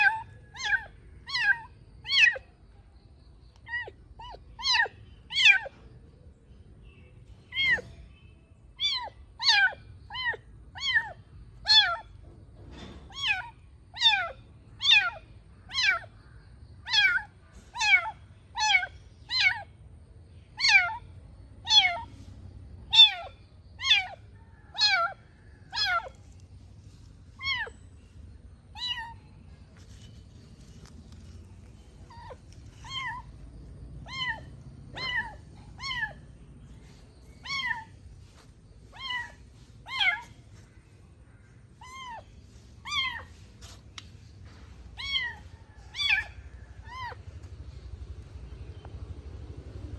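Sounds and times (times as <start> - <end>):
kitten meowing: 0.0 - 2.4, 8.8 - 12.1, 13.1 - 16.1, 16.9 - 19.7, 20.6 - 21.0, 21.7 - 22.1, 22.9 - 24.2, 24.8 - 26.1, 27.4 - 27.8, 28.8 - 29.2, 32.1 - 33.4, 34.0 - 36.2, 37.4 - 37.9, 38.9 - 40.4, 41.8 - 43.4, 44.9 - 47.2.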